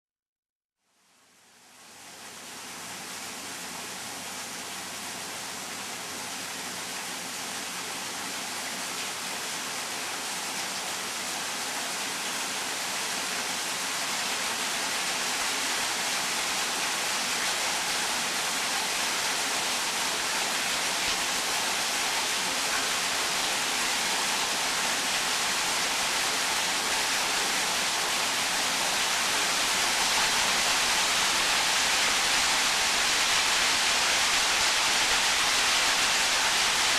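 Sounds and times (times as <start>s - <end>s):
waterfall rushing: 9.1s - 36.9s.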